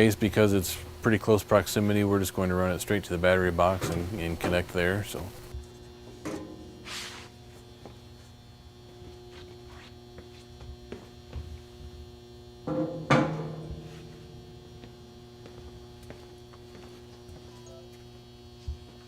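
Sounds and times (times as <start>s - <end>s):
steady hum: 0.0s - 19.0s
sharp metallic knocks: 12.7s - 14.0s.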